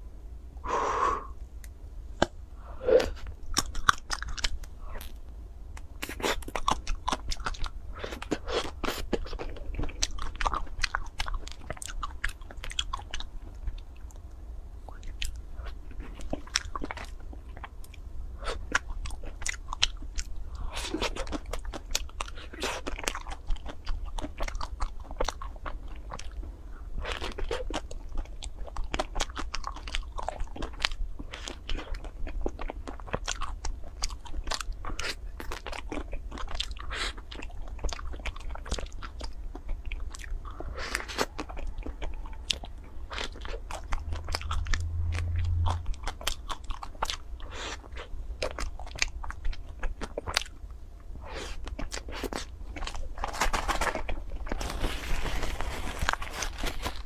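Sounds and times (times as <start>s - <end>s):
low hum: 41.4s - 47.5s.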